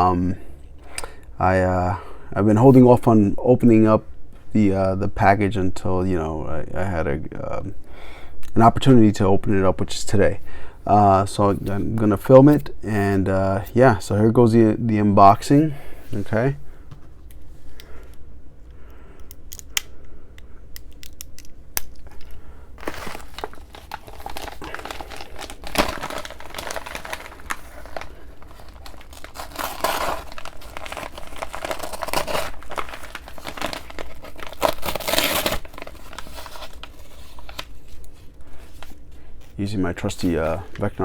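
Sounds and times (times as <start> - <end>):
packaging crinkling and tearing: 20.8 - 41.0.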